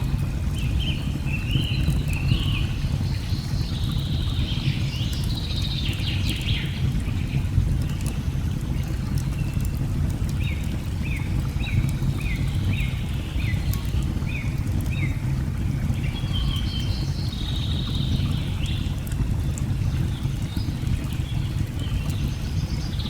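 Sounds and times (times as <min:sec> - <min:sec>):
birds chirping: 0:20.3 - 0:23.0.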